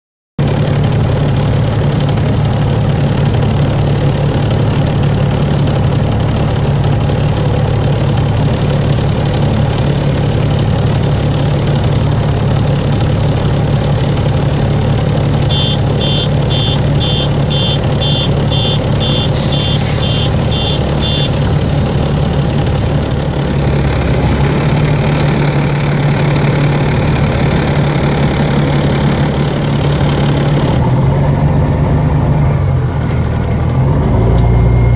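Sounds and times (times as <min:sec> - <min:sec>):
bus engine low drone: 0:00.4 - 0:34.9
electronic beeps: 0:15.5 - 0:21.8
high-pitched tone: 0:15.5 - 0:22.4.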